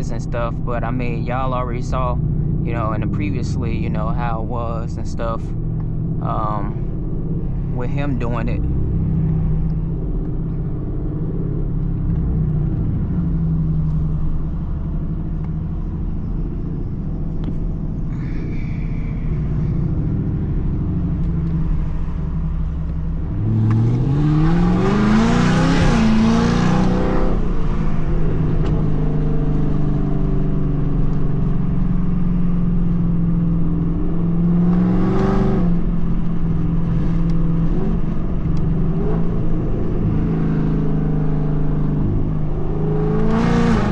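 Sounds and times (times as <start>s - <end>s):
car engine drone while driving: 0.0s - 43.9s
engine revving hard: 23.4s - 27.6s, 42.6s - 43.9s.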